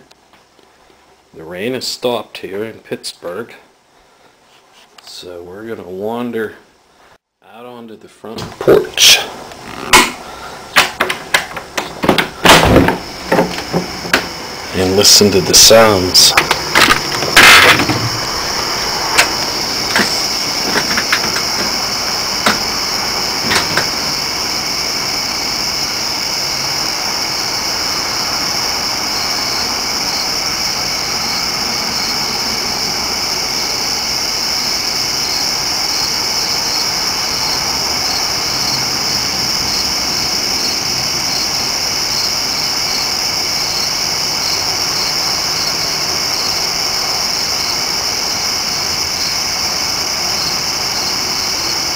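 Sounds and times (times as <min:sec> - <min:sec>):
soft background hiss: 0:00.0 - 0:51.9
insects trilling: 0:08.5 - 0:51.9
knocks and clicks: 0:10.8 - 0:14.3, 0:16.2 - 0:21.8, 0:22.4 - 0:22.7, 0:23.4 - 0:24.0.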